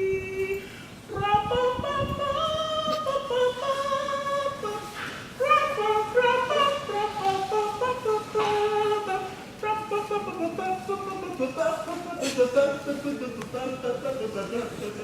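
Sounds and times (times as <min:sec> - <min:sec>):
man singing unaccompanied: 0:00.0 - 0:15.0.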